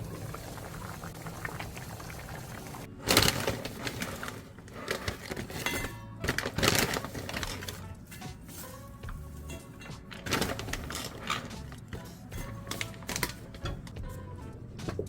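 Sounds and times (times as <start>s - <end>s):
liquid bubbling or pouring: 0.0s - 2.9s
quiet kitchen background: 0.0s - 15.0s.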